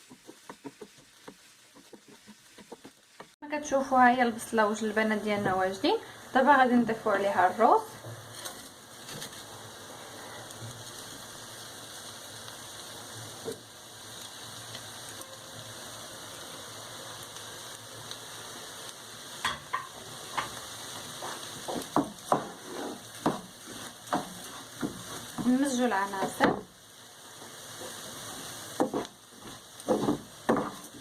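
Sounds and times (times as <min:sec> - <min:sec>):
utensil knocking and scraping pan: 0:00.0 - 0:03.4, 0:21.2 - 0:26.7, 0:28.8 - 0:31.0
vegetables sizzling in oil: 0:00.0 - 0:31.0.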